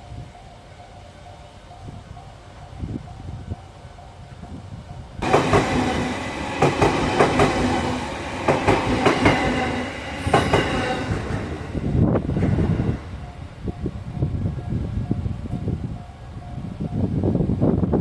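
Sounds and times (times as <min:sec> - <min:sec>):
train wheels clicking over rail joints: 0:05.2 - 0:15.8.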